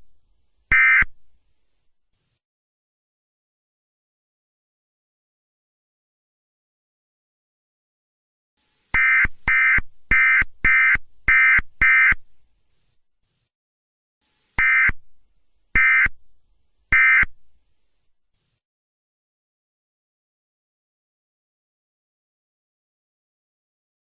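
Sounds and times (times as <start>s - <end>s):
electronic data bursts: 8.9s - 12.2s.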